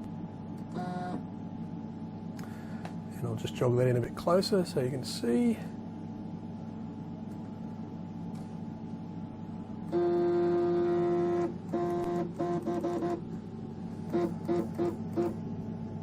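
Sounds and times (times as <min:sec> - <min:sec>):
steady low hum: 0:00.0 - 0:16.0
stepper motor whine: 0:09.8 - 0:13.3, 0:13.9 - 0:15.4.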